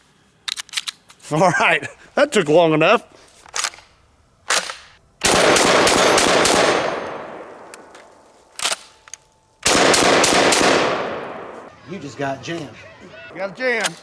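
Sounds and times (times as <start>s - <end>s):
shotgun shots: 4.5s - 7.9s, 9.6s - 11.7s
rapid shotgun fire with echo: 5.2s - 7.7s, 9.6s - 11.7s.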